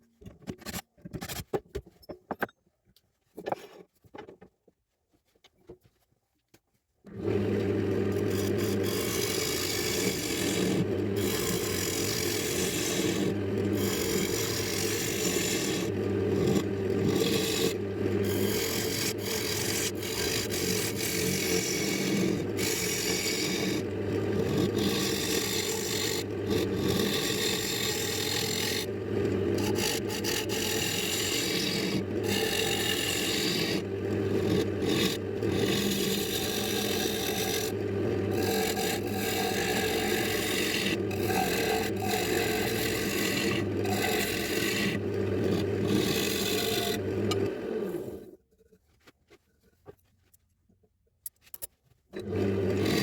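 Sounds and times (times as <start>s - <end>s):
lathe motor hum: 7.1s - 48.2s, 52.2s - 53.0s
rasping scraping on spinning wood: 7.6s - 48.3s, 52.2s - 53.0s.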